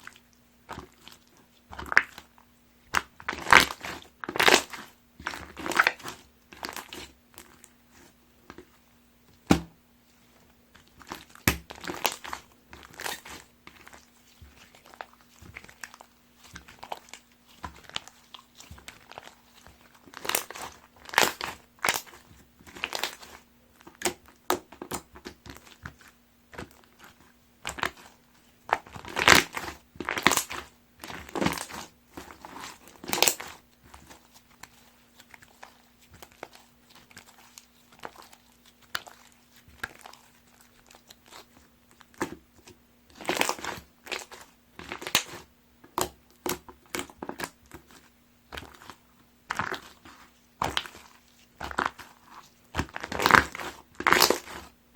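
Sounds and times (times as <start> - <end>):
slime squished by hand crackling: 10.8 - 54.7.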